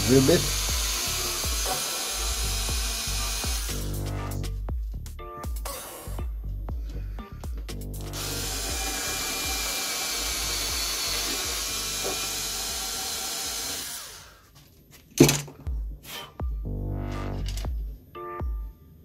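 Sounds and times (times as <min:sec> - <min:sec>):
small power drill drilling: 0:00.0 - 0:03.9, 0:08.2 - 0:14.4.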